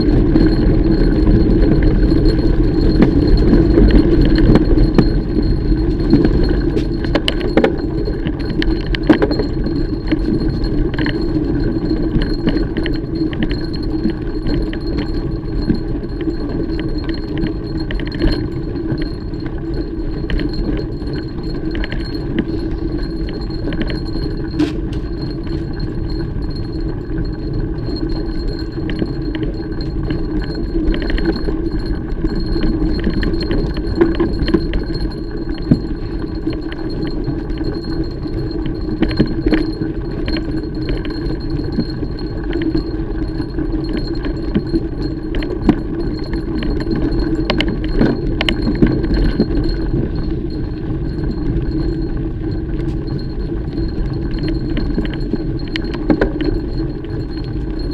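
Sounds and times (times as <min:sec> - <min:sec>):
bike chain clinking and rattling: 0:00.0 - 0:57.9.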